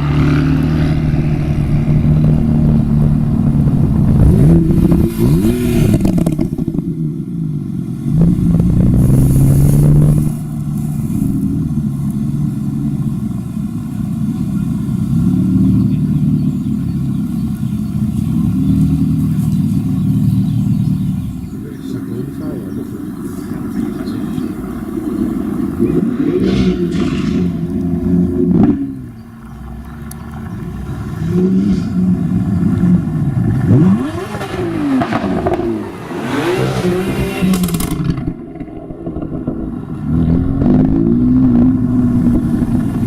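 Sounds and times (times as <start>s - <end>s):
car engine and exhaust rumbling: 0.0s - 43.0s.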